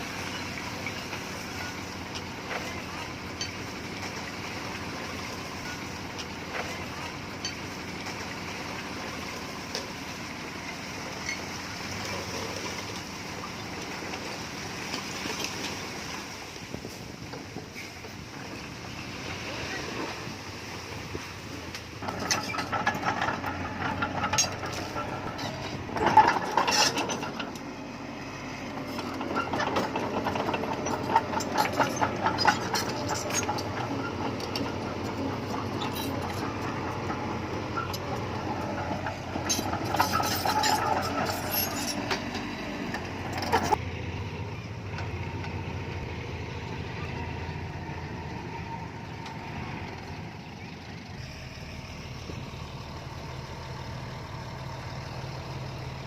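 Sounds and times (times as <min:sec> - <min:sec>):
bulldozer diesel engine: 0:00.0 - 0:56.0
metallic clanking and rattling: 0:21.7 - 0:27.8, 0:28.7 - 0:43.8.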